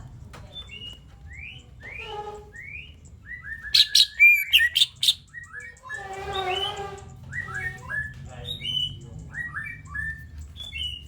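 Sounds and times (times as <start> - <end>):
bird singing: 2.8 - 11.0.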